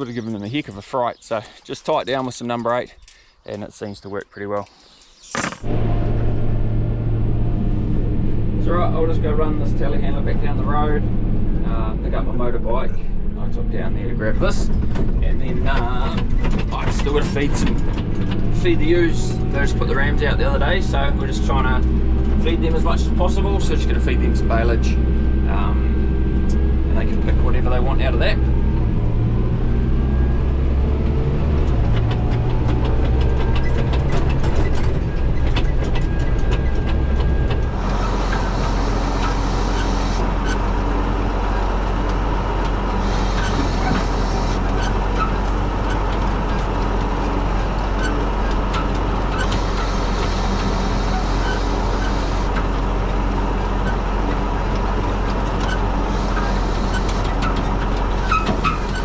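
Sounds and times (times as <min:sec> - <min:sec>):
farm machine engine running: 0:05.4 - 0:59.0
rattling: 0:31.5 - 0:53.2.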